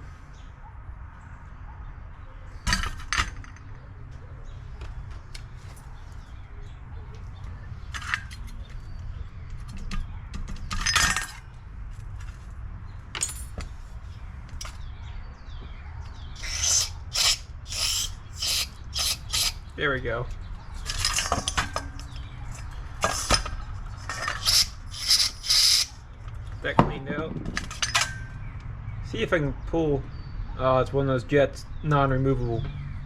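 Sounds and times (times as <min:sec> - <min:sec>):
steady low hum: 0:16.1 - 0:28.6
loud noisy bursts: 0:16.4 - 0:19.6, 0:24.4 - 0:26.0
metal parts clinking: 0:16.4 - 0:19.6, 0:20.9 - 0:25.9.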